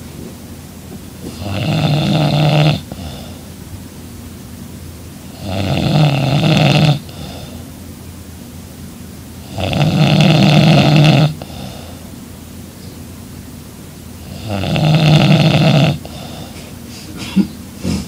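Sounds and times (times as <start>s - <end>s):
woman snoring: 1.3s - 3.5s, 5.3s - 7.6s, 9.4s - 12.0s, 14.2s - 16.6s
quiet breathing: 2.8s - 3.6s, 7.0s - 7.8s, 11.3s - 12.2s, 16.0s - 17.2s.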